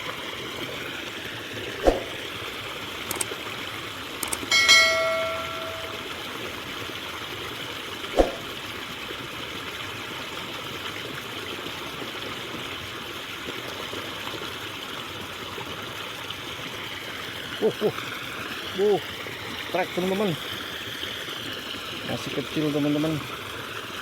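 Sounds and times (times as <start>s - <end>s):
water running in a ditch: 5.5s - 24.0s.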